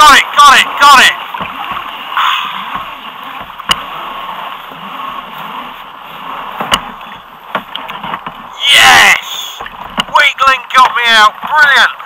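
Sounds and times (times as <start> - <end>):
water rushing around kayak: 0.0 - 12.0
wind: 0.0 - 12.0
sharp knocks: 1.4 - 3.8.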